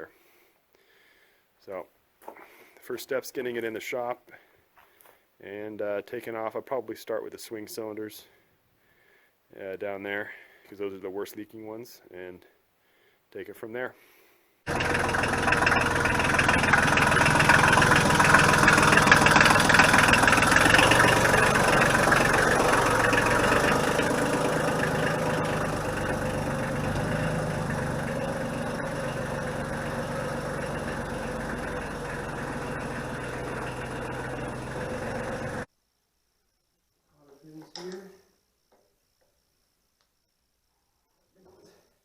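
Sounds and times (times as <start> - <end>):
diesel tractor engine running: 14.7 - 35.7.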